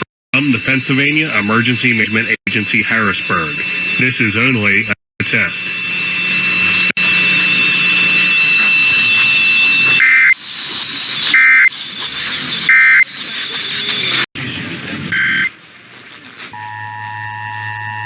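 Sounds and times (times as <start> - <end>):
radio hiss: 0.0 - 18.0
alert data tone bursts: 0.4 - 14.2
steady high whistle: 5.3 - 14.3.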